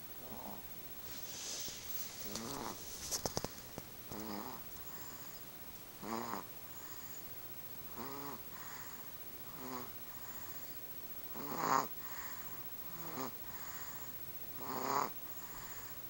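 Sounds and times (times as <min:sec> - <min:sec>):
hard rasping snoring: 0:04.1 - 0:05.4, 0:06.0 - 0:07.2, 0:07.9 - 0:09.9, 0:11.3 - 0:12.3, 0:12.9 - 0:13.7, 0:14.6 - 0:15.9.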